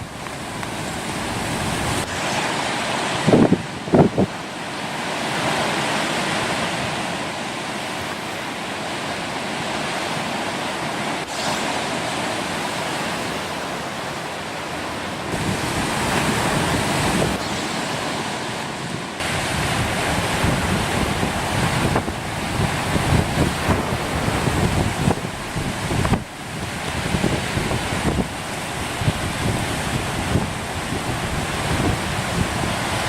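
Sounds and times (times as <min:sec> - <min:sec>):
strong wind gusts: 0:00.0 - 0:33.0
surf crashing: 0:00.0 - 0:33.0.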